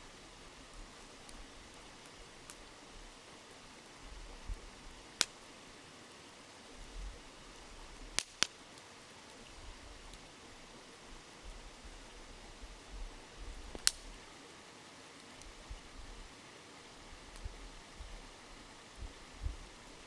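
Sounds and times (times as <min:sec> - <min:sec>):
flowing river murmur: 0:00.0 - 0:20.0
campfire crackling and popping: 0:00.1 - 0:20.0.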